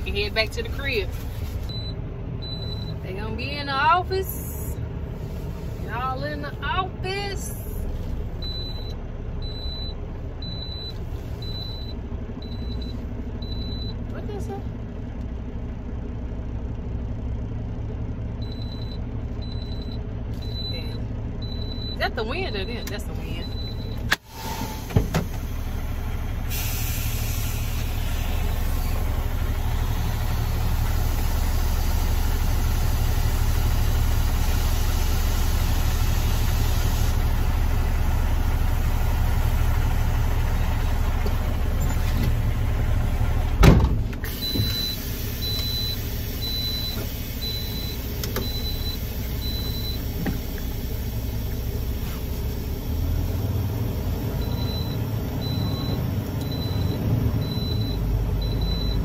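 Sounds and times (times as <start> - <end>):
truck diesel engine running: 0.0 - 59.0
wind buffeting truck: 14.7 - 59.0
high beeps: 54.4 - 59.0.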